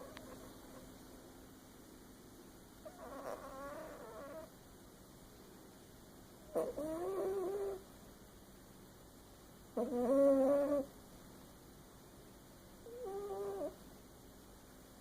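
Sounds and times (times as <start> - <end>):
pet snoring: 2.8 - 4.5, 6.5 - 7.8, 9.8 - 10.9, 12.8 - 13.8.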